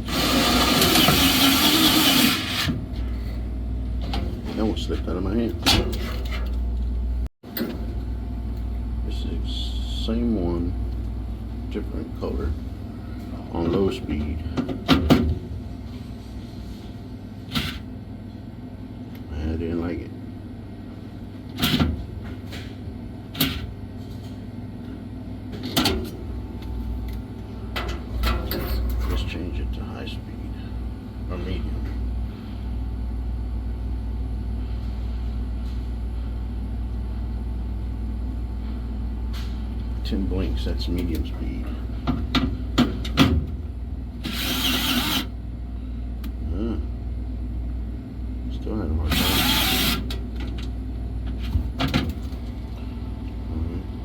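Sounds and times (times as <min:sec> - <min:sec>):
steady low hum: 0:00.0 - 0:54.0
electric screwdriver driving screw: 0:00.1 - 0:02.7, 0:44.3 - 0:45.3, 0:49.1 - 0:50.1.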